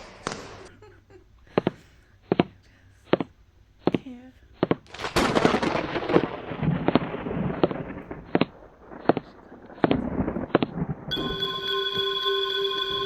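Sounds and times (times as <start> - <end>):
sharp pops: 0.0 - 0.7, 1.6 - 10.8
electronic tone: 11.1 - 13.0.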